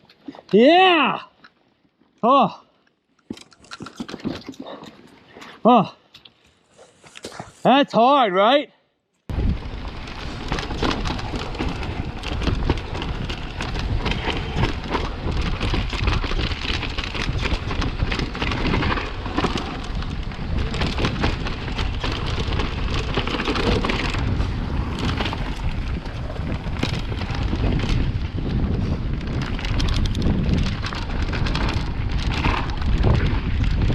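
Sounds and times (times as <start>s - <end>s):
bike rattling over bumps: 9.3s - 33.9s
tyres over dirt: 9.3s - 33.9s
wind on microphone: 9.3s - 33.9s.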